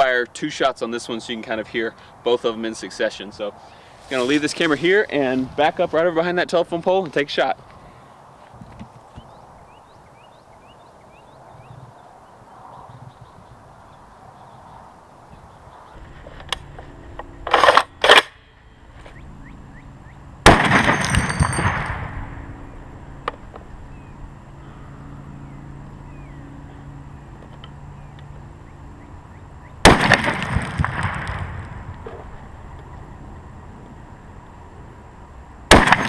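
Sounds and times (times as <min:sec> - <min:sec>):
rifle shots echoing: 0:20.4 - 0:22.4, 0:29.8 - 0:31.9, 0:35.7 - 0:36.0.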